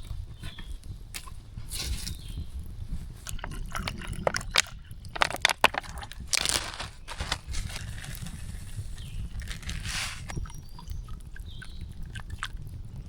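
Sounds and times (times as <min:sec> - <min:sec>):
sticks snapping: 0:04.5 - 0:08.1
dry leaves and sticks crunching: 0:04.5 - 0:10.4.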